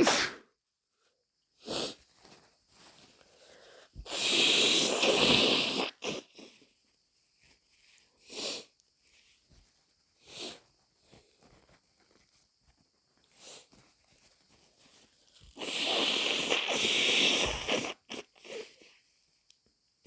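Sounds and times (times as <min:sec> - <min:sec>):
breathy sniffs: 0:00.0 - 0:00.4, 0:01.6 - 0:02.1, 0:02.8 - 0:06.7, 0:08.2 - 0:08.8, 0:10.2 - 0:10.7, 0:13.3 - 0:13.7, 0:15.6 - 0:18.9
person blowing nose: 0:00.0 - 0:00.4, 0:01.6 - 0:02.0, 0:04.0 - 0:06.6, 0:15.6 - 0:18.8.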